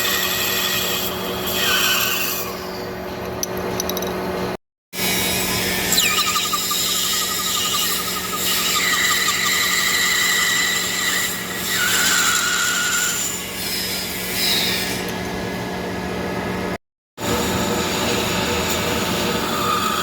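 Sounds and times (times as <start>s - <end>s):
high cutting whine: 5.0s - 11.6s.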